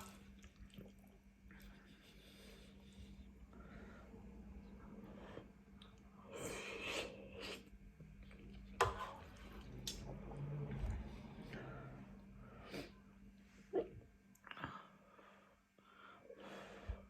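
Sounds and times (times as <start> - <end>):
wet chewing of noodles: 0.0 - 2.9.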